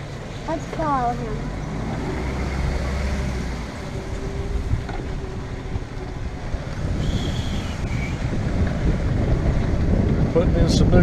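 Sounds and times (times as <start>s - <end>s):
wind buffeting microphone: 0.0s - 11.0s
golf cart motor running: 1.9s - 10.4s.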